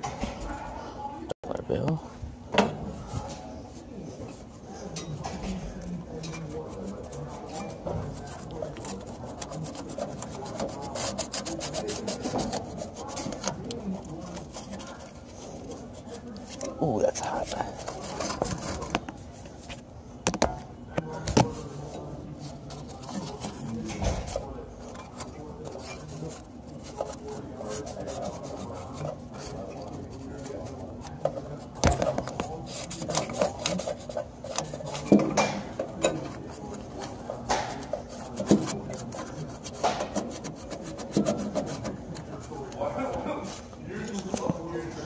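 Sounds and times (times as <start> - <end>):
tool scraping and rubbing: 3.7 - 19.9, 21.4 - 45.0.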